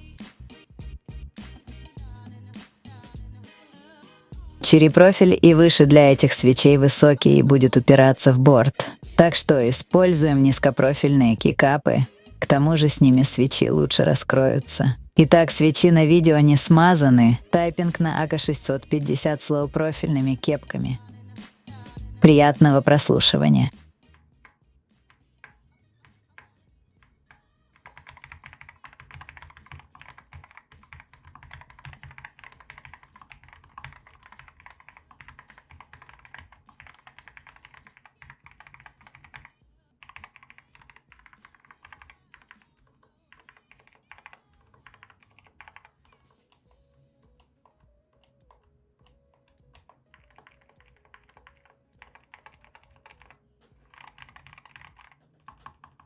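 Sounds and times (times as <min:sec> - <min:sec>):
typing on mechanical keyboard: 0:24.1 - 0:56.0.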